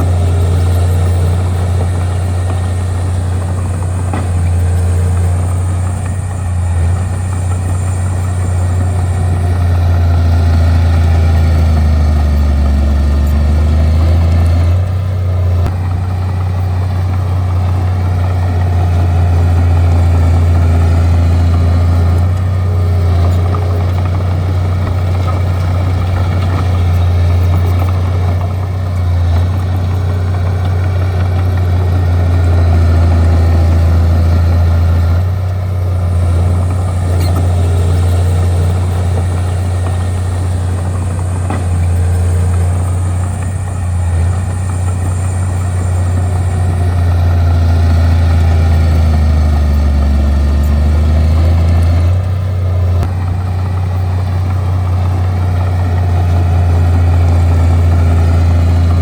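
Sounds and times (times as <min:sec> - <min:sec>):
bulldozer diesel engine drone: 0:00.0 - 0:59.0.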